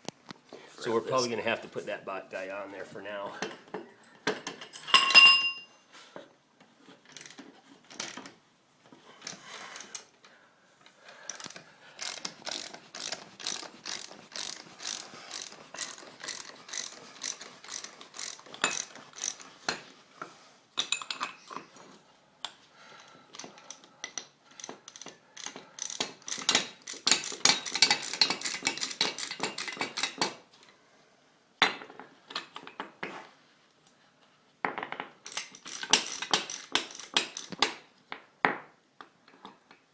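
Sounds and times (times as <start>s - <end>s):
ratchet wrench clicking: 11.3s - 19.5s, 23.4s - 30.2s, 35.3s - 37.8s.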